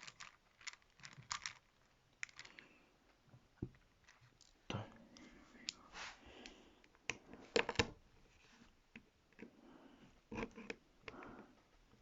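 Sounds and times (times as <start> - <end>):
small plastic parts clicking: 0.0 - 2.7.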